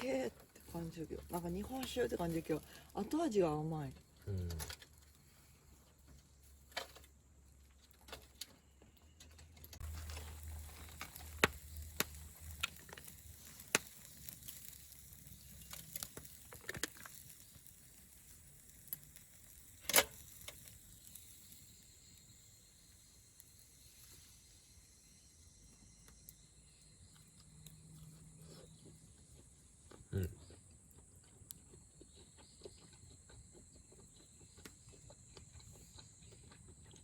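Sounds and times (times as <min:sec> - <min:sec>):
small wood fire crackling: 0:00.0 - 0:37.0
fire pops and clicks: 0:09.3 - 0:22.5.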